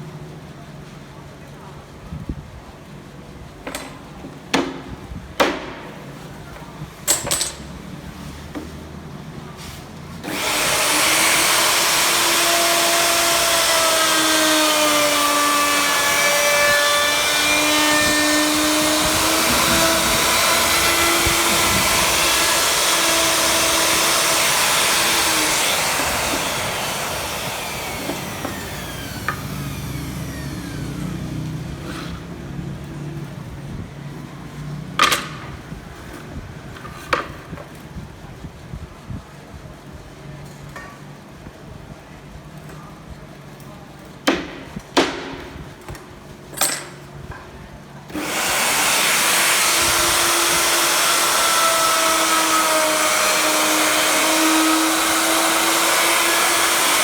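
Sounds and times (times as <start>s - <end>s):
power tool motor running: 10.2s - 32.5s, 48.1s - 57.0s
sharp knocks: 44.3s - 45.5s.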